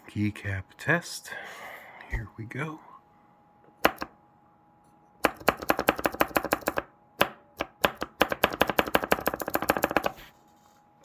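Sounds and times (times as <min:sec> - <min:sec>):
mechanical keyboard clicking: 0:07.8 - 0:10.1.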